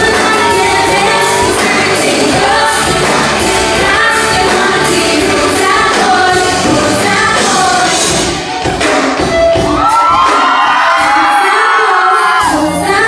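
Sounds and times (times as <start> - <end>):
live pop music with singer: 0.0 - 13.0.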